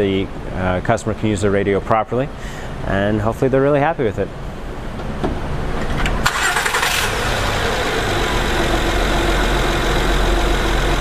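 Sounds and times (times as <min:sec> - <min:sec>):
car engine idling: 0:05.9 - 0:11.0.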